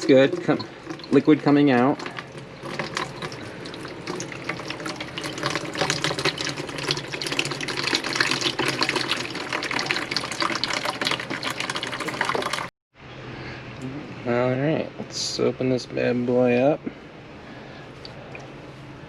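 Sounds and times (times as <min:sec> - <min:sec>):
liquid splashing into a vessel: 0:00.0 - 0:12.7.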